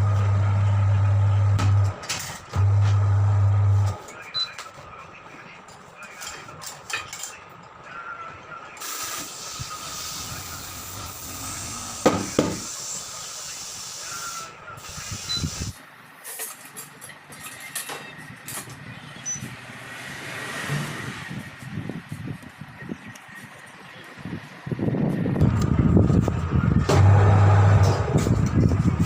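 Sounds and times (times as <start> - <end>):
compressed air hissing: 8.8 - 15.8
sharp knock: 12.0 - 12.7.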